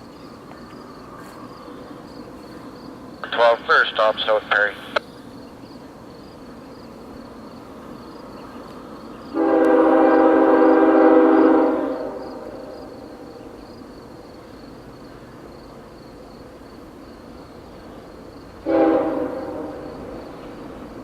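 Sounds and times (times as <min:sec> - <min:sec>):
locomotive air horn blast: 0:09.3 - 0:13.2, 0:18.6 - 0:20.2.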